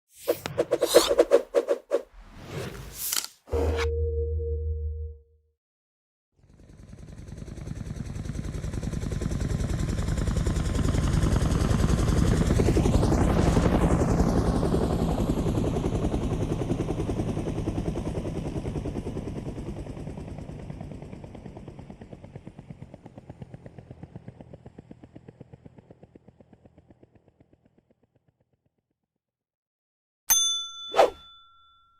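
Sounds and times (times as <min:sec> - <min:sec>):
helicopter rotor chopping: 0:00.2 - 0:02.1.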